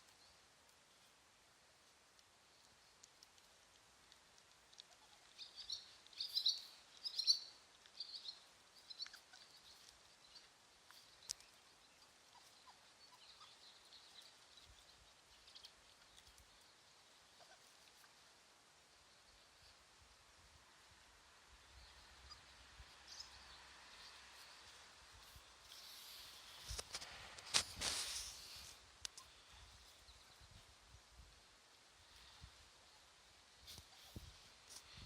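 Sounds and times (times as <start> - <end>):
low background hiss: 0.0 - 35.0
birds chirping: 4.8 - 19.8.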